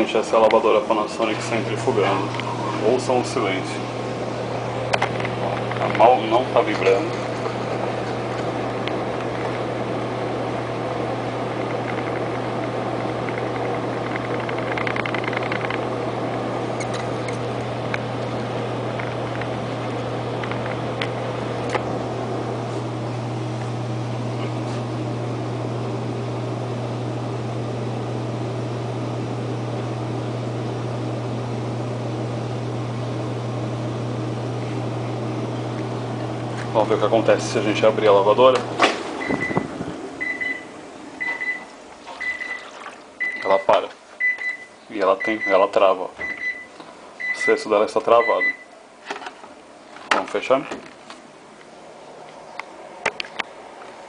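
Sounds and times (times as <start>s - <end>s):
washing machine drum spinning: 36.2s - 44.7s.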